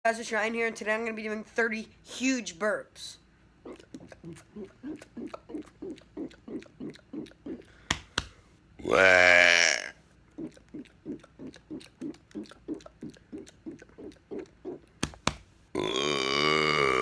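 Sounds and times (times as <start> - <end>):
throaty gulps: 3.6 - 8.2, 8.8 - 15.0, 15.8 - 17.0
man burping: 8.8 - 10.0, 15.8 - 17.0.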